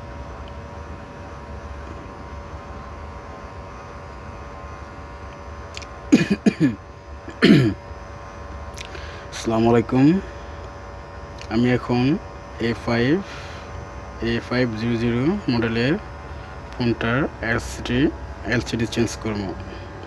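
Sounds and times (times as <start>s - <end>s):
background hum: 0.0s - 20.0s
man clearing his throat: 6.1s - 7.8s.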